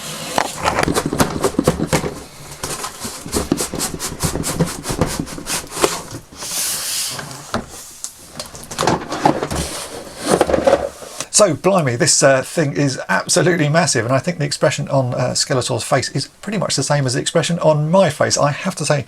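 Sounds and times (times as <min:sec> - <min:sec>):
knife cutting cardboard box: 0:00.0 - 0:07.3
scraping rustle: 0:00.0 - 0:11.3
clicks crackles and scrapes: 0:00.2 - 0:06.5.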